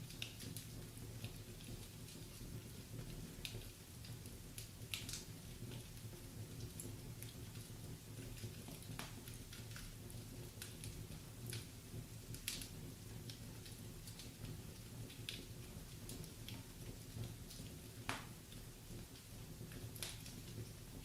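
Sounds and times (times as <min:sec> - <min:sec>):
wood fire crackling and snapping: 0:00.0 - 0:21.0.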